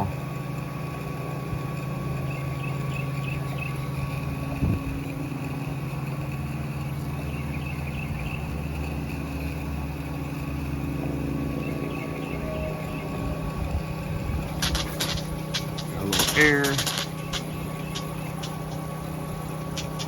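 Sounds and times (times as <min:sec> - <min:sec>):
pump engine running: 0:00.0 - 0:20.0
liquid spraying onto roof: 0:14.4 - 0:20.0.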